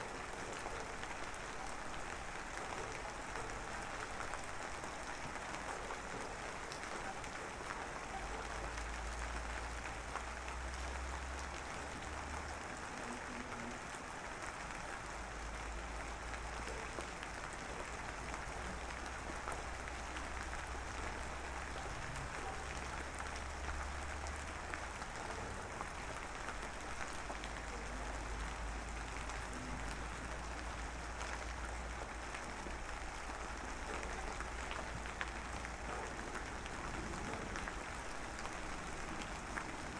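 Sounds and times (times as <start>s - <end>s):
rain patter: 0.0s - 39.9s.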